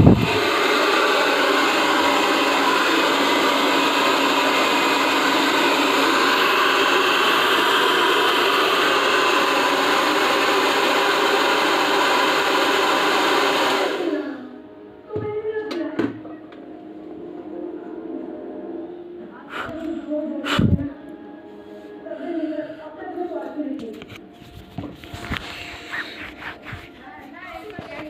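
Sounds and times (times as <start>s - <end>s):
hair dryer blowing air: 0.0s - 14.6s, 20.4s - 20.8s, 24.8s - 27.0s
hair dryer winding down: 0.0s - 14.6s.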